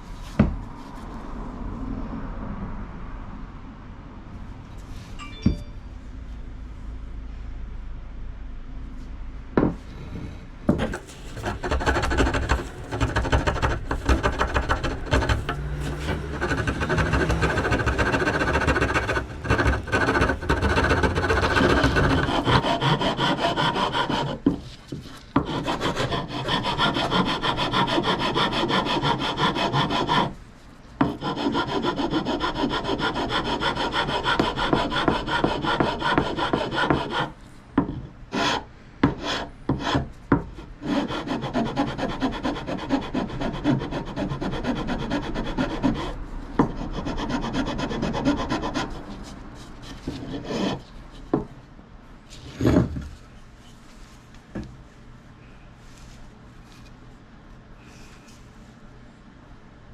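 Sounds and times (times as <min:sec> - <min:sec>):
file rasping wood: 0:10.7 - 0:30.4, 0:31.0 - 0:51.5.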